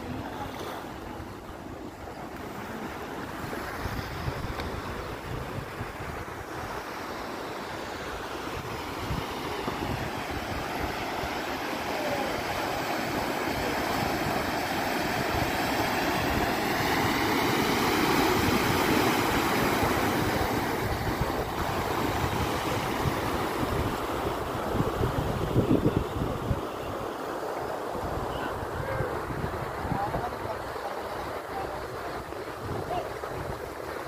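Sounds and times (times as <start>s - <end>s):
wind buffeting microphone: 3.3s - 6.8s, 13.7s - 27.0s, 27.9s - 30.8s.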